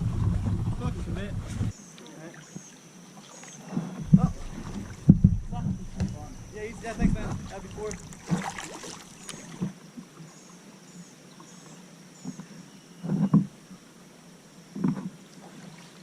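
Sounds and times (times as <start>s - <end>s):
paddle splashes: 0.0s - 9.8s, 14.8s - 16.0s
faint high hiss: 0.8s - 16.0s
knocks on kayak hull: 4.0s - 8.5s.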